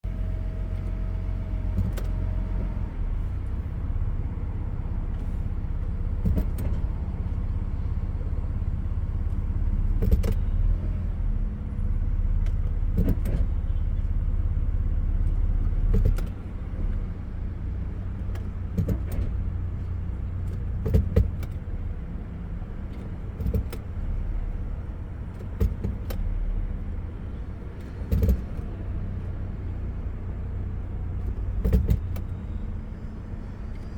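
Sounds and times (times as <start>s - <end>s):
transmission shifting clunk: 0.0s - 3.9s, 5.0s - 11.1s, 12.4s - 14.2s, 15.2s - 17.2s, 18.0s - 33.9s
car engine idling: 0.0s - 11.4s.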